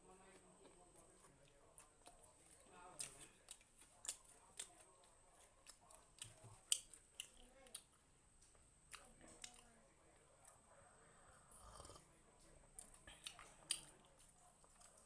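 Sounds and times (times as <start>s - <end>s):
person chewing food: 0.3s - 9.7s, 12.8s - 15.0s
mouth clicks and crunches: 12.8s - 15.0s.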